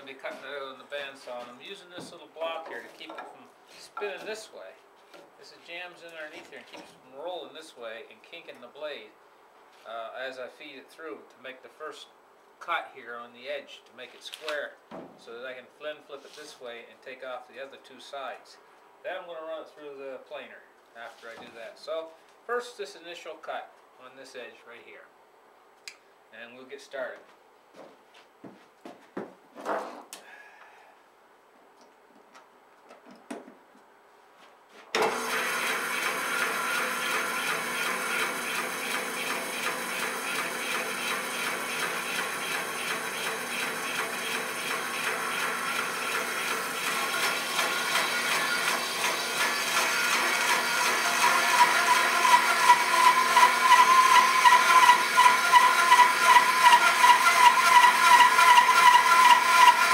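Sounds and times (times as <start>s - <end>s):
bandsaw cutting wood: 35.0s - 59.9s.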